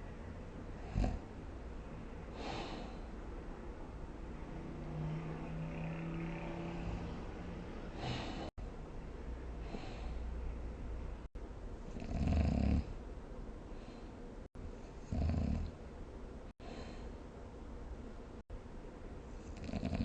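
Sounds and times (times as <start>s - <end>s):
low humming snore: 0.8s - 1.3s, 4.4s - 8.6s, 11.9s - 13.0s, 14.9s - 15.8s, 19.4s - 20.0s
breathy snoring hisses: 19.6s - 20.0s.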